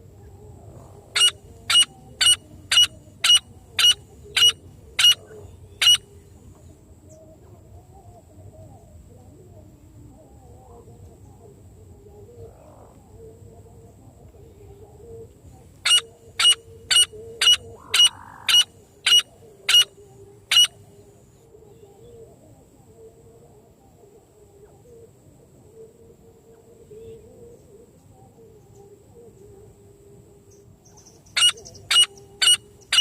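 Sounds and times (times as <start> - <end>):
francolin calling: 0.2 - 6.4, 15.0 - 21.9, 30.5 - 33.0.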